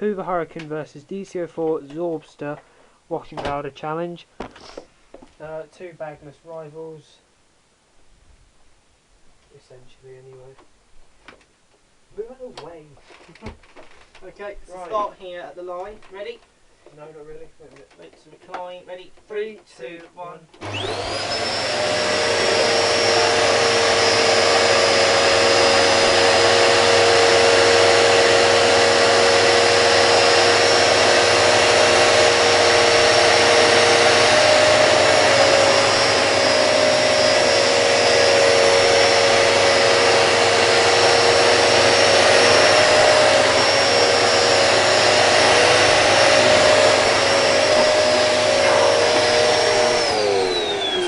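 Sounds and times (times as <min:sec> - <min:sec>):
vacuum cleaners running: 0:20.6 - 0:51.0.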